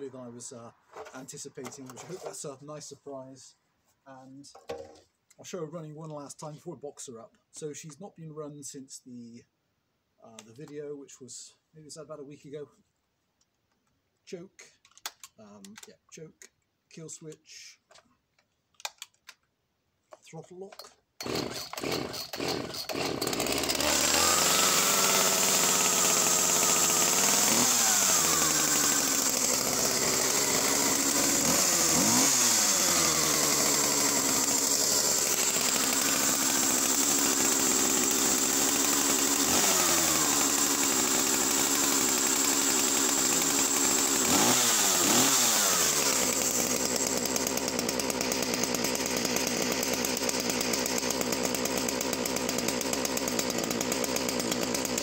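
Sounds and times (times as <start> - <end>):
chainsaw revving and idling: 21.2 - 55.0.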